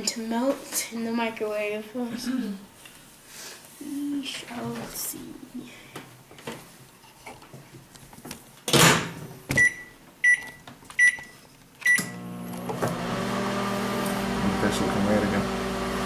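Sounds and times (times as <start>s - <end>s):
keypad beeps: 9.6s - 12.2s
microwave oven humming: 12.0s - 16.0s.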